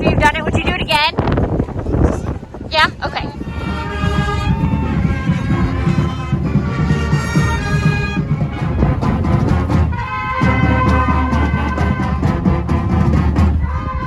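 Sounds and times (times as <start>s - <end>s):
upbeat music with brass: 2.8s - 14.0s.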